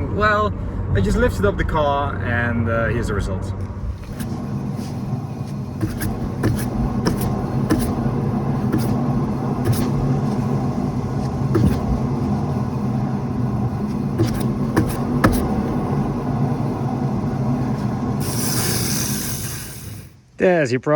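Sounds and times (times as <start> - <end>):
wheel bearing humming with ticks: 3.6 - 20.2.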